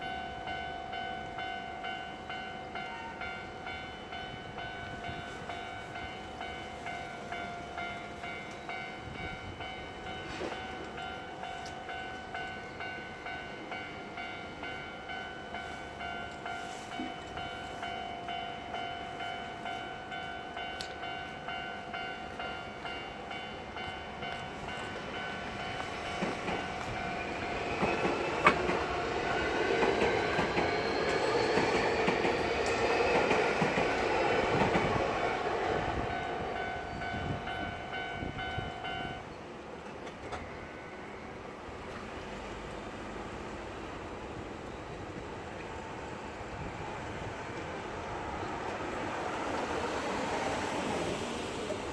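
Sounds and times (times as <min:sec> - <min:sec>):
level-crossing warning bell: 0:00.0 - 0:51.9
train wheel rumble and clatter: 0:22.2 - 0:39.0, 0:39.8 - 0:40.7.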